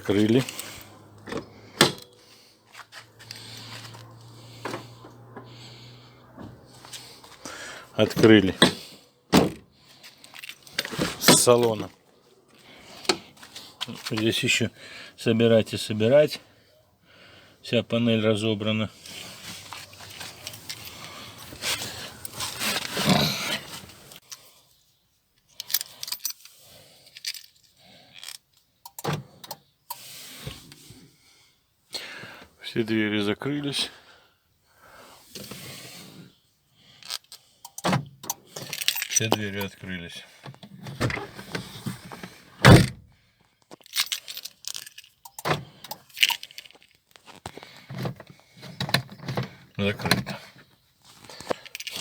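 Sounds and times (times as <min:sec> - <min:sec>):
car keys jangling: 0:00.0 - 0:02.2, 0:03.1 - 0:05.5, 0:09.9 - 0:11.9, 0:19.6 - 0:22.7, 0:25.5 - 0:29.6, 0:37.0 - 0:39.8, 0:43.7 - 0:49.9, 0:51.2 - 0:52.0.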